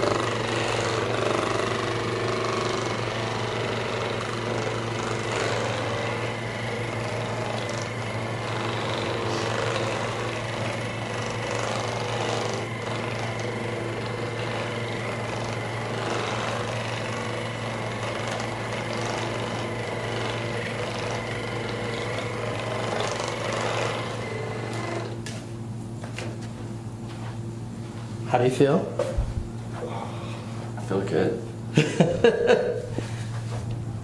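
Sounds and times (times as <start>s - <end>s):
massage gun buzzing: 0.0s - 25.4s.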